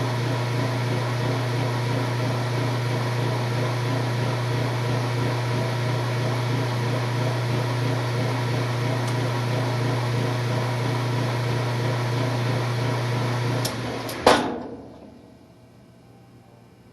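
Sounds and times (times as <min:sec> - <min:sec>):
washing machine humming: 0:00.0 - 0:15.9
machine clicks and clunk: 0:13.6 - 0:15.2.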